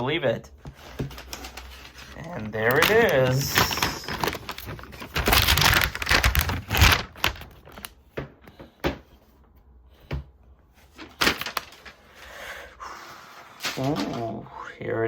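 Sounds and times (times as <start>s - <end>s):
packaging crinkling and rustling: 0.7s - 8.1s, 10.8s - 12.3s.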